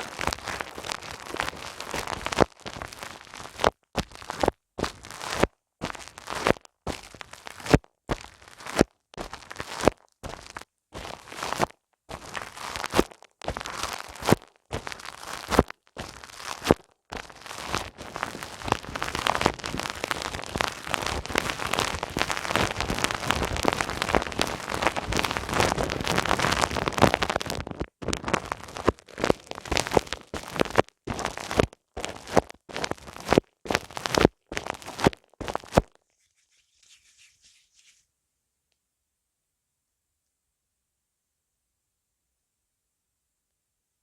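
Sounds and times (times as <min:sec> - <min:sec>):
hands rubbing on microphone: 0:35.6 - 0:38.1.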